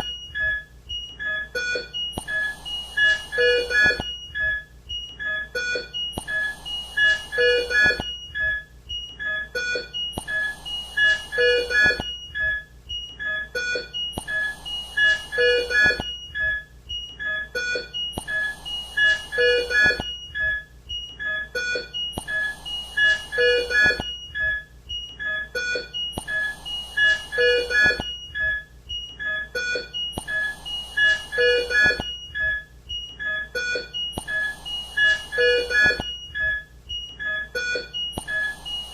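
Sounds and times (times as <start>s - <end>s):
patient monitor beeping: 0.0s - 38.9s.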